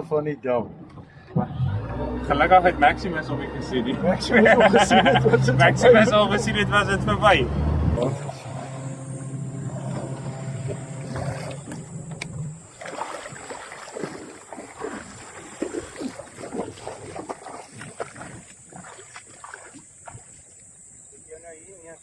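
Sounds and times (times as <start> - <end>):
boat motor running: 0.8 - 20.9
water splashing and knocking: 8.0 - 20.6.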